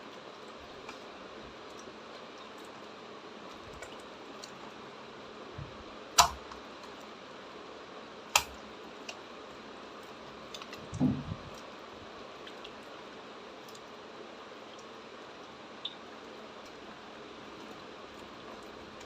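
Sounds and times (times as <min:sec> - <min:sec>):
slime clicking: 0:06.2 - 0:06.4, 0:08.3 - 0:09.2
slime squelching: 0:10.0 - 0:15.1.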